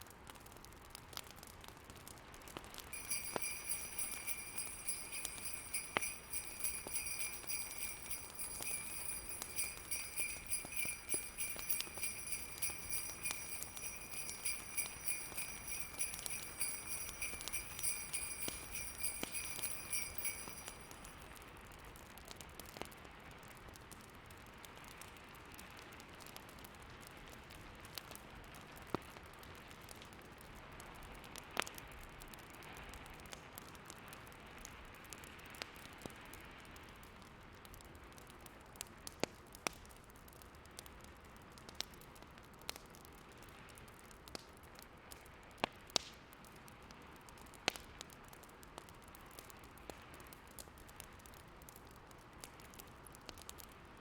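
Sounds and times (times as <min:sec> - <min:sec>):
fire crackling and popping: 0:00.3 - 0:21.2, 0:33.3 - 0:54.0
sleigh bells jingling: 0:02.9 - 0:21.3.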